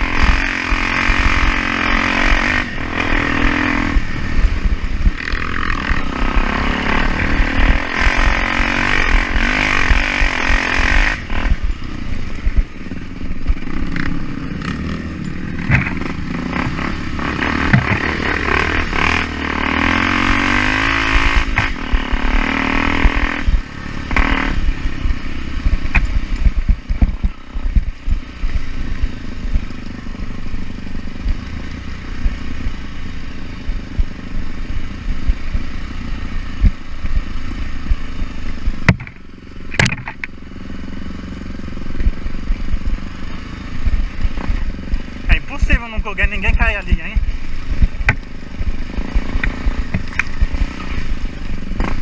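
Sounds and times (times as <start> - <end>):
motorcycle engine revving: 0.0 - 52.0
rattles and knocks: 15.2 - 16.8, 38.8 - 40.3.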